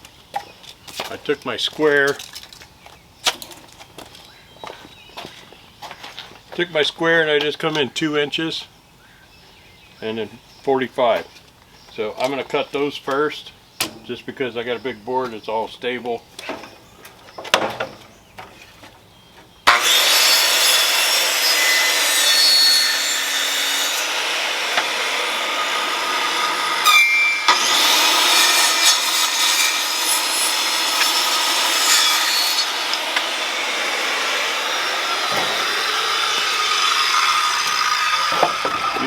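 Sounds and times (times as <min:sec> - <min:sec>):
saw cutting through wood board: 0:19.7 - 0:39.0.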